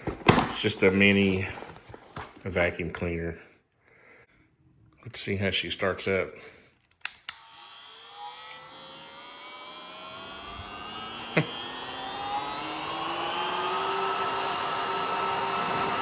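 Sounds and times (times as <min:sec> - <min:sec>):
sharp click: 0:06.9 - 0:07.4
vacuum cleaner motor whine: 0:07.3 - 0:16.0.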